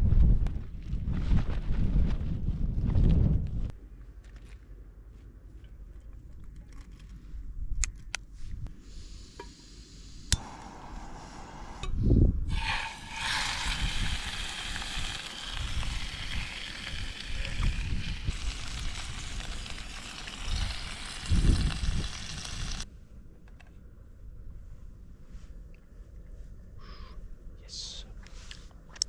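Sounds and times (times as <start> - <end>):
steak sizzling in a pan: 12.5 - 22.8.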